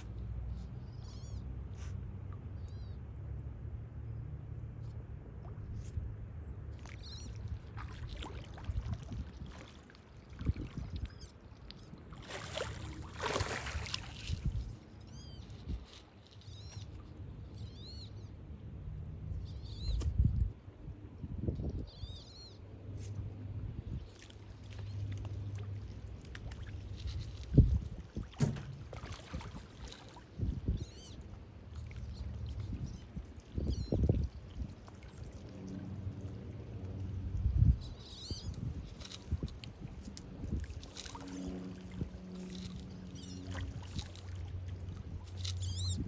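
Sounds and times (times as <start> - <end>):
water splashing and sloshing: 6.6 - 18.0, 22.9 - 46.0
low thumps: 28.4 - 29.1.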